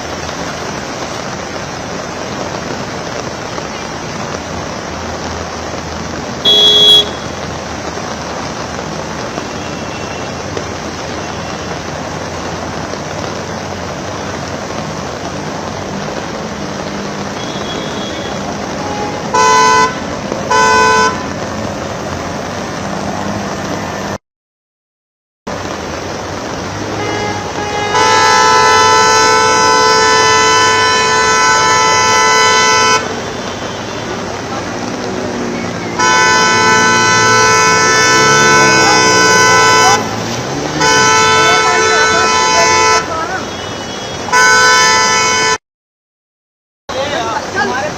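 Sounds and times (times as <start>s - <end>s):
rain hiss: 0.0s - 24.2s, 25.5s - 45.1s, 46.9s - 47.9s
road traffic: 0.0s - 24.2s, 25.5s - 45.6s, 46.9s - 47.9s
car horn honking: 6.4s - 7.4s, 17.4s - 21.4s, 26.8s - 34.2s, 35.9s - 45.6s.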